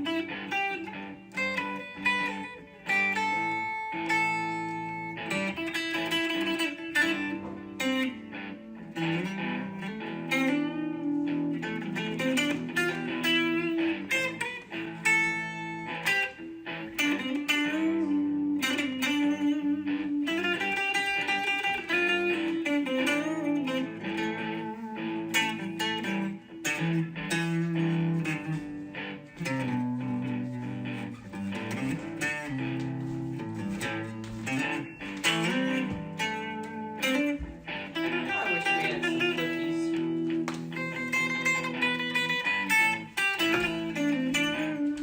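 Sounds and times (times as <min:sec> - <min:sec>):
plucked guitar melody: 0:00.0 - 0:45.0.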